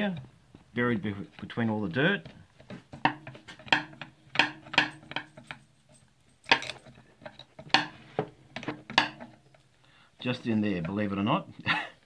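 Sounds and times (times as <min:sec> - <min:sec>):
metallic clicks and scrapes of tools: 0:04.7 - 0:07.8.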